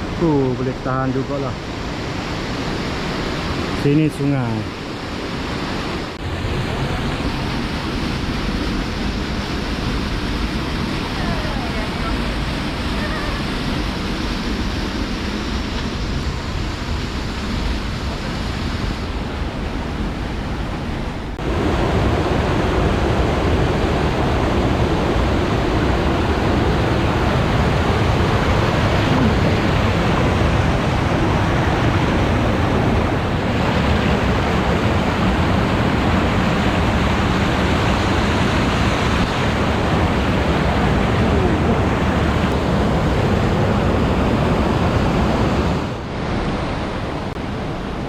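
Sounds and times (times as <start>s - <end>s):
river water rushing over rocks: 21.4s - 48.0s.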